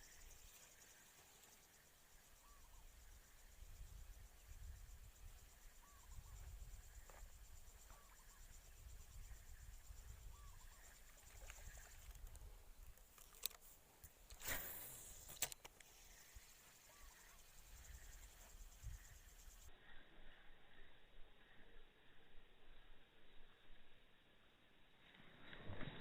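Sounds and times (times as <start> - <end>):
crickets buzzing: 0.0 - 19.7
short insect call: 0.0 - 26.0
sharp clicks: 12.1 - 16.0.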